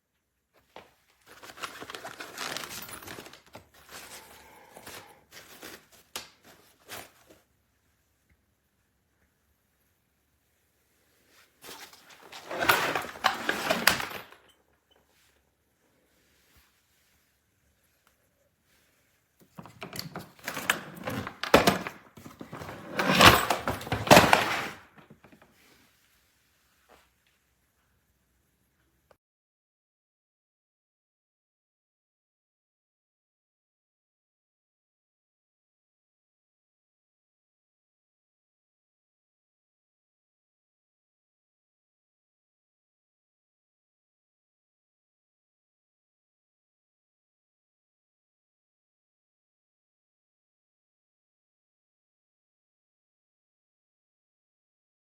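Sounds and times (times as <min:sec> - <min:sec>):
fabric rustling and crinkling: 0:00.6 - 0:07.4
suitcase knocking and scraping: 0:11.7 - 0:14.4, 0:19.6 - 0:25.2.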